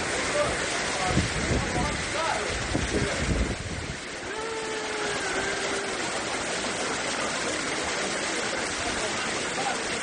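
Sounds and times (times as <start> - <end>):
floodwater rushing down street: 0.0 - 10.0
wind rumble on microphone: 1.0 - 4.1.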